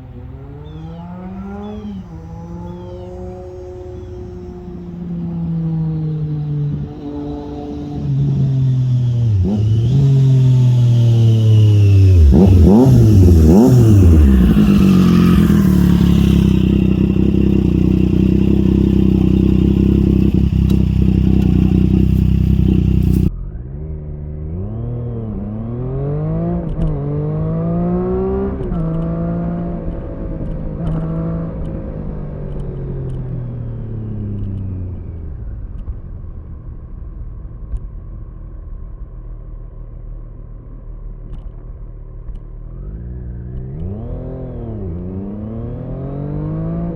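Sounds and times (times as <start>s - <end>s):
motorcycle engine revving: 0.0s - 34.6s, 42.3s - 46.9s
motorcycle engine idling: 1.6s - 23.3s.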